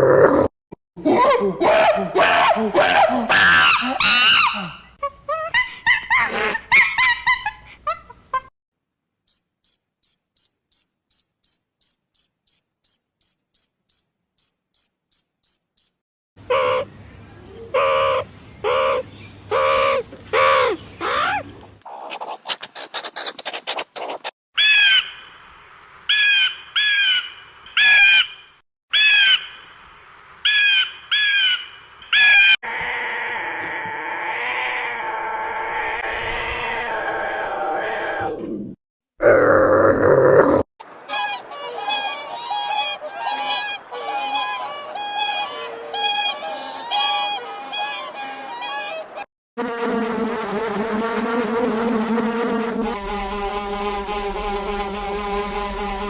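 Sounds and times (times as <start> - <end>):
high insect-like chirps: 9.3 - 16.0
animal calls rising and falling: 16.5 - 25.1, 30.5 - 38.6
short repeated animal calls: 17.8 - 25.0.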